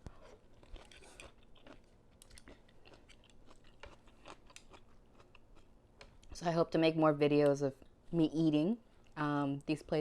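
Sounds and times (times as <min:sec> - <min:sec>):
faint chewing: 0:00.0 - 0:06.4.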